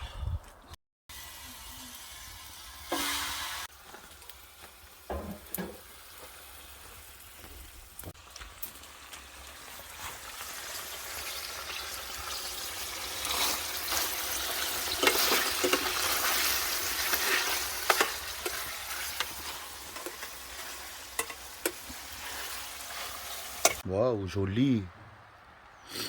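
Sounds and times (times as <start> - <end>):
food sizzling in frying pan: 1.1 - 23.8
utensil clicking against pan: 17.7 - 22.0.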